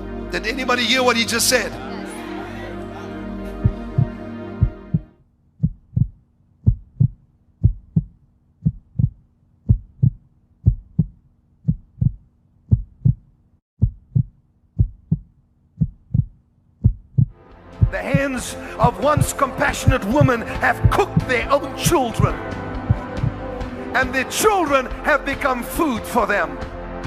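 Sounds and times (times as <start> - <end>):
heartbeat thumps: 3.6 - 21.3, 22.2 - 23.5.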